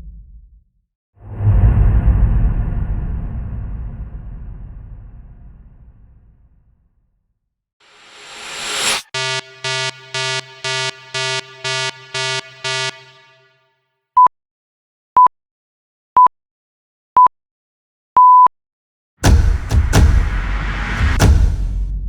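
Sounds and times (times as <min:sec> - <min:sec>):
buzzy pulsed tones: 0:08.1 - 0:13.5
pure beeps: 0:08.1 - 0:13.5
loud impact with low rumble: 0:19.2 - 0:22.0.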